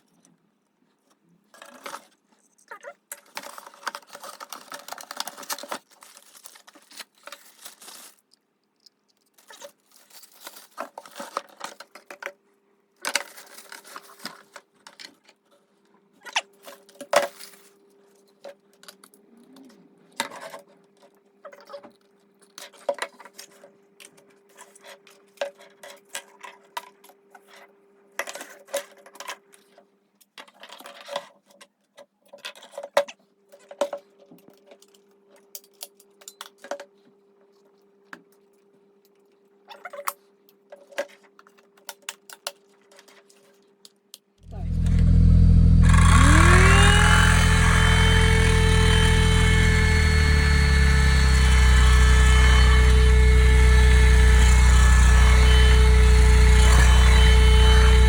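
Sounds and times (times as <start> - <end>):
packaging rustling and scraping: 3.3 - 8.4, 9.4 - 11.4
faint steady hum: 44.5 - 58.0.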